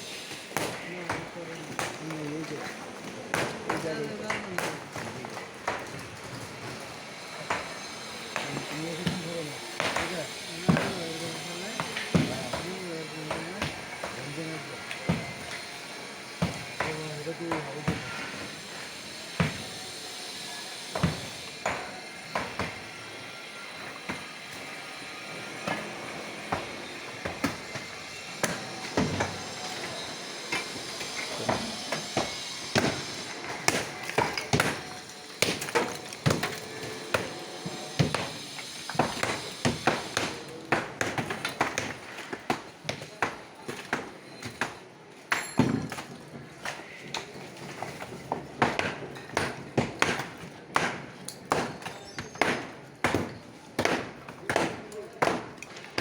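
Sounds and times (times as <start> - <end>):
steady background noise: 0.0 - 56.0
tools knocking at construction work: 7.5 - 15.6, 20.9 - 22.9, 25.5 - 56.0.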